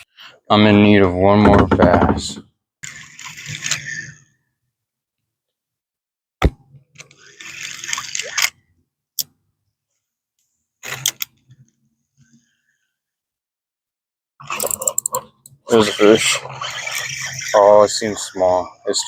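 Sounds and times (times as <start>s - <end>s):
sharp clicks of fishing gear: 14.5s - 15.6s.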